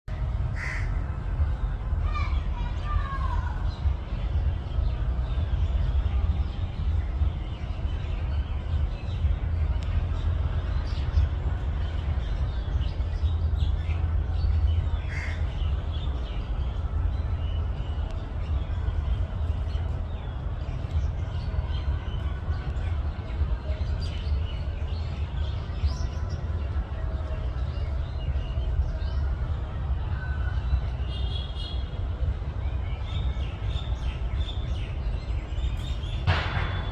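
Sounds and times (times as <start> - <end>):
steady low rumble: 0.0 - 31.0
birds chirping: 0.1 - 36.9
crow cawing: 0.6 - 1.0.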